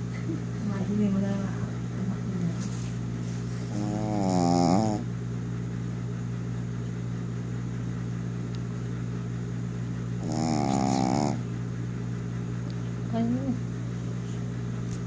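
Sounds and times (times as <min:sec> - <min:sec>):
steady low hum: 0:00.0 - 0:15.0
person snoring: 0:03.6 - 0:05.0, 0:10.2 - 0:11.4.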